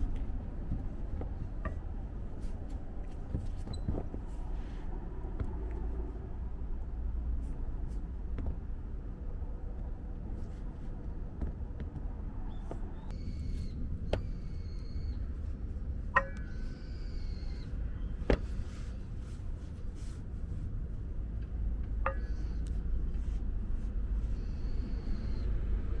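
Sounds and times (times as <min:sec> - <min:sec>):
truck engine rumbling: 0:00.0 - 0:06.3
sharp metallic clunks: 0:16.2 - 0:16.7, 0:22.0 - 0:22.6.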